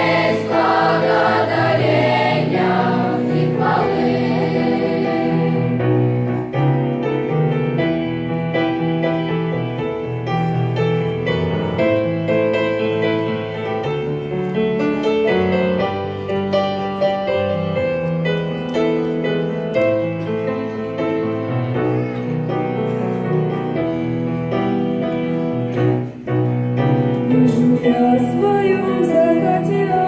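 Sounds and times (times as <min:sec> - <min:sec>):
slow piano hymn melody: 0:00.0 - 0:30.0.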